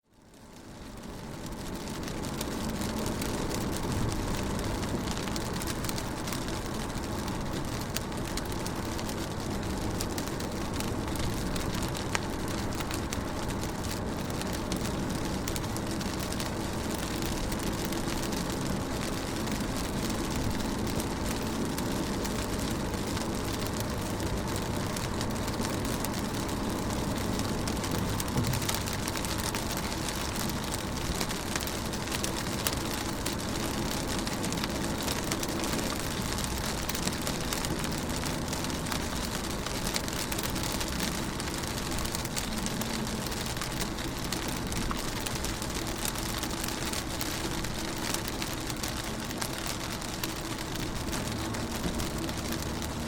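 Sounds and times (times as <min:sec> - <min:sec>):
rain on a car window: 0:00.0 - 0:53.0
low rumble: 0:22.8 - 0:30.9.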